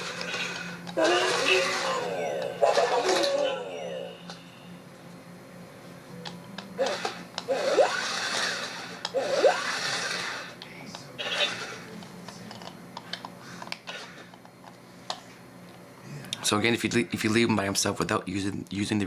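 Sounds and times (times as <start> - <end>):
motor whirring: 0.0 - 4.4, 6.8 - 10.6, 11.2 - 12.0
rising electronic warbles: 1.0 - 4.6, 7.5 - 8.3, 9.1 - 10.1.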